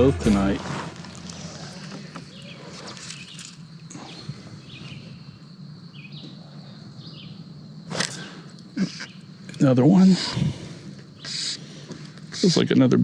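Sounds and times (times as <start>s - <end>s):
faint low hum: 0.0s - 7.5s.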